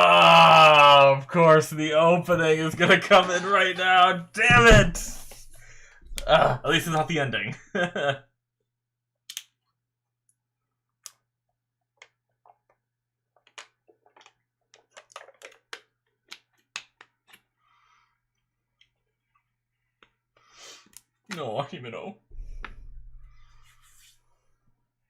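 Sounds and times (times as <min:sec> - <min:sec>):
small clicks and handling noises: 0:11.9 - 0:17.5.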